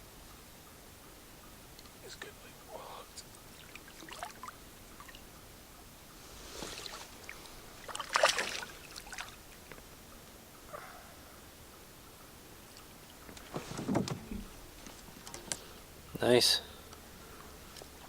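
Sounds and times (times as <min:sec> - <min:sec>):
water splashing: 0:03.6 - 0:05.2, 0:06.6 - 0:09.7.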